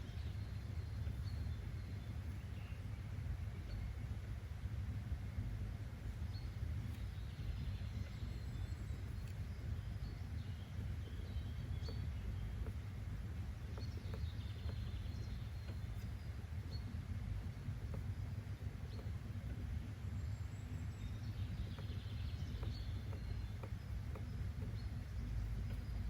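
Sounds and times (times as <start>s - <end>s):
low outdoor rumble: 0.0s - 26.0s
faint bird chirps: 6.3s - 26.0s.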